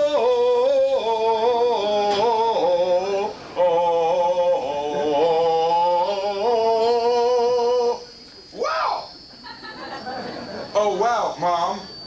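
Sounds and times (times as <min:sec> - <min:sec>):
man making wavering vocal sounds: 0:03.6 - 0:08.0.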